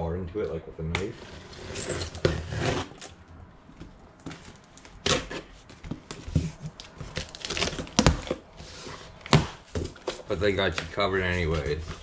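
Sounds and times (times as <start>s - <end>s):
cardboard scraping and rustling: 1.0s - 3.2s, 4.3s - 12.0s
packing tape being slit: 6.7s - 8.4s.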